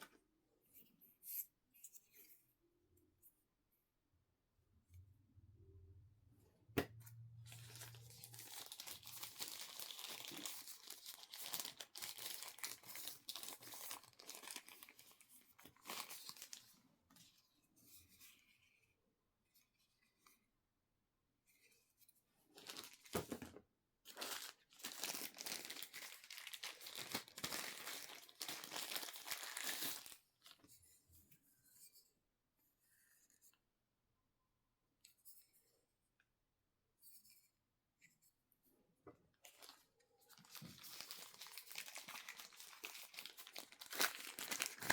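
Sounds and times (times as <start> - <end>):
packaging rustling: 7.4 - 16.7, 22.6 - 23.5, 24.1 - 30.6, 39.4 - 44.9
packaging crinkling and tearing: 7.5 - 16.7, 22.6 - 23.4, 24.1 - 30.2, 40.4 - 44.9.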